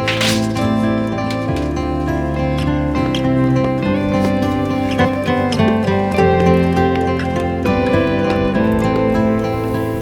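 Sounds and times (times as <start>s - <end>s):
song with plucked acoustic guitar: 0.0s - 10.0s.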